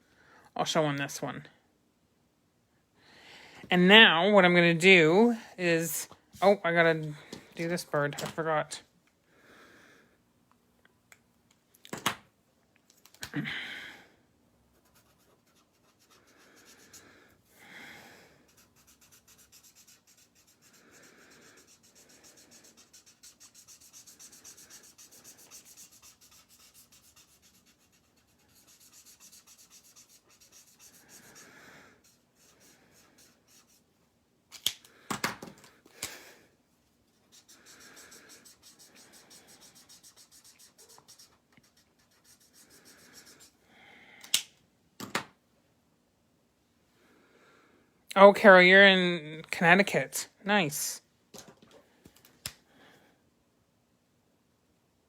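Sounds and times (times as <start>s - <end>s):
pen scratching on cardstock: 18.5s - 31.4s, 37.3s - 43.6s.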